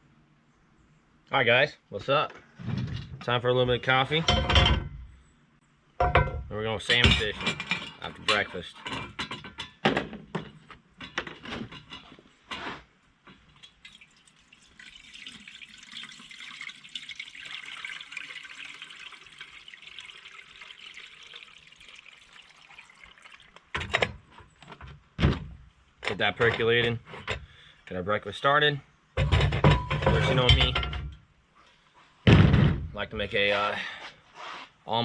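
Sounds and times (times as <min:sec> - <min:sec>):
tap water running into pot: 0:13.5 - 0:23.9
pot clinking and knocking: 0:29.2 - 0:31.1.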